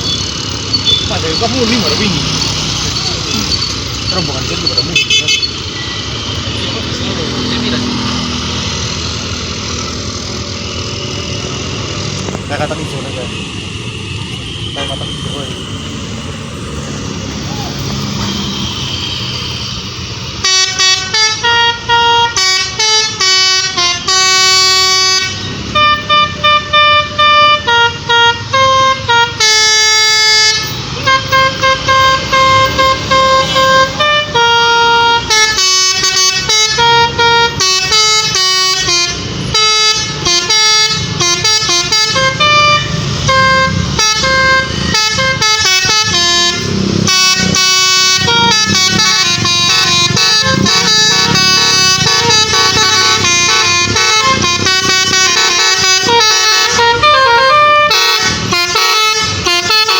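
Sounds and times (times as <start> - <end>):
multi-tone air horns playing tune: 20.4 - 59.9.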